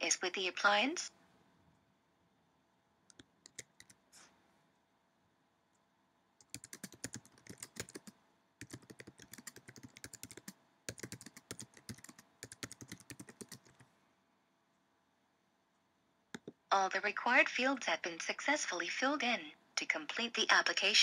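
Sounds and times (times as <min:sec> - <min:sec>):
typing on computer keyboard: 0:03.1 - 0:04.0, 0:06.4 - 0:13.9.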